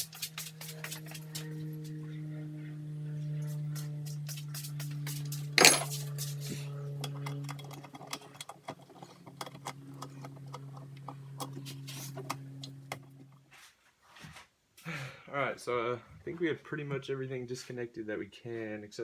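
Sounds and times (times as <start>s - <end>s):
steady low hum: 0.0s - 13.5s
tools clinking on metal: 5.6s - 6.0s.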